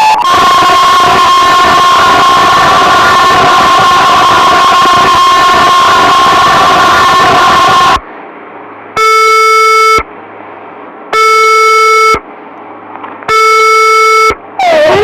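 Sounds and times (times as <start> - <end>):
alert alarm blasts: 0.0 - 8.0, 9.0 - 10.1, 11.1 - 12.2, 13.3 - 15.0
faint hum: 0.0 - 15.0.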